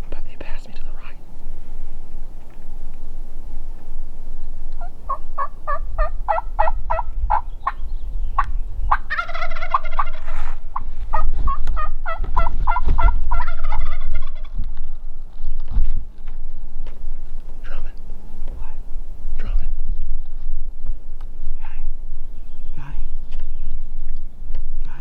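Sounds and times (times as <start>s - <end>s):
low rumble: 0.0s - 25.0s
turkeys yelping: 4.7s - 15.1s
turkey gobble: 4.8s - 7.8s, 8.4s - 14.6s.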